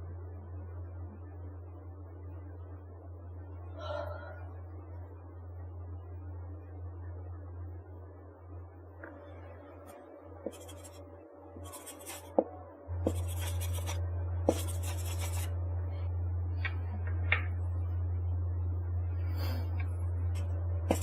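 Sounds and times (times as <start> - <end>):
low hum: 0.0 - 21.0
pen scratching on paper: 10.4 - 11.0, 11.6 - 15.5.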